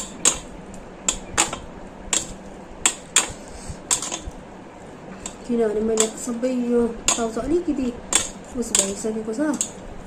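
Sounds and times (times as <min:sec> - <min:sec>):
utensils clicking against a bowl: 0:03.9 - 0:04.4, 0:05.2 - 0:06.4, 0:07.0 - 0:09.9.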